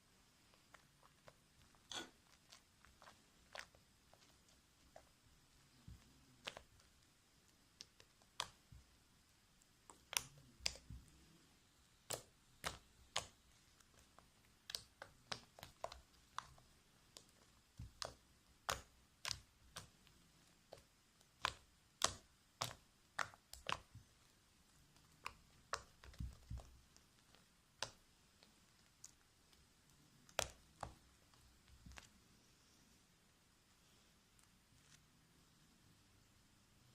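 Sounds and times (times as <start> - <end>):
slime clicking and snapping: 6.4 - 6.8, 9.9 - 11.0, 12.0 - 20.0, 20.7 - 24.0, 30.2 - 32.1.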